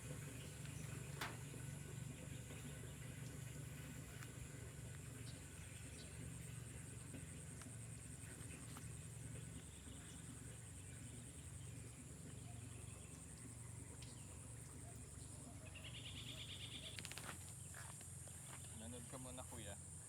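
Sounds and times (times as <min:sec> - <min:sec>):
lower insect trill: 0:05.3 - 0:20.0.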